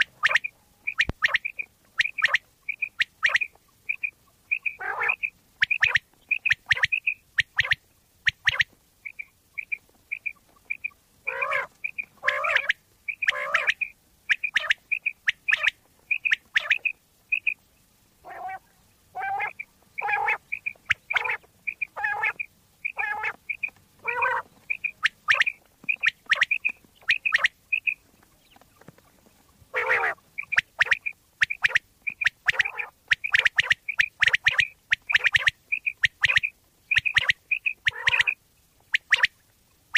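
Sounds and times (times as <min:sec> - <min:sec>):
lower coarse calls: 0:00.0 - 0:17.6, 0:18.2 - 0:28.0
quail calling: 0:00.0 - 0:17.6, 0:18.2 - 0:29.0, 0:29.7 - 0:39.4.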